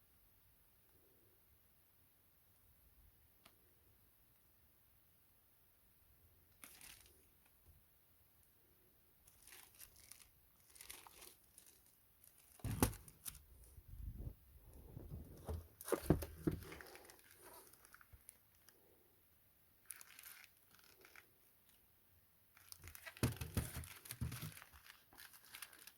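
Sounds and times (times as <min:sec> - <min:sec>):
packaging rustling and crumpling: 0:06.6 - 0:07.3, 0:09.3 - 0:13.5, 0:14.9 - 0:18.8, 0:19.8 - 0:21.3, 0:22.6 - 0:25.9.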